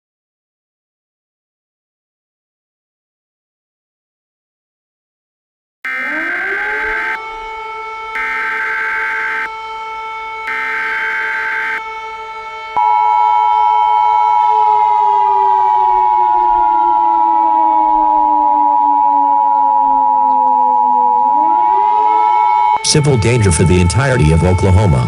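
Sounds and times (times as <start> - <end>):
civil defense siren wailing: 5.9 - 7.6, 8.2 - 9.5, 10.5 - 11.8.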